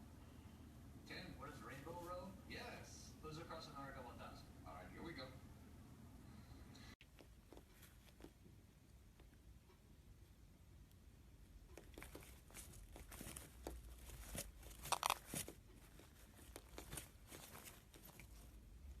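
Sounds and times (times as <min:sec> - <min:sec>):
light crinkling and crackling: 0:11.6 - 0:19.0.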